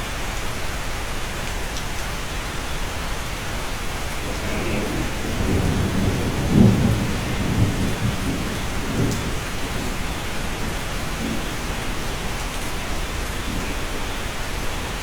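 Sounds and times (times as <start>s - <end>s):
steady rain: 0.0s - 15.0s
thunder rumbling: 3.8s - 15.0s.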